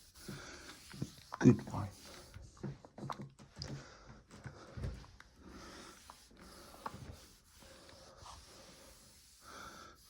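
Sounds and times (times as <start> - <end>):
cloth rubbing on banister: 5.8 - 10.0.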